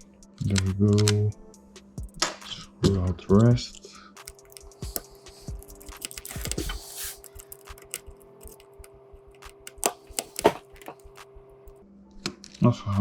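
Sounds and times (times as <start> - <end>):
screwdriver clicks and taps: 4.2 - 8.8, 9.4 - 11.1.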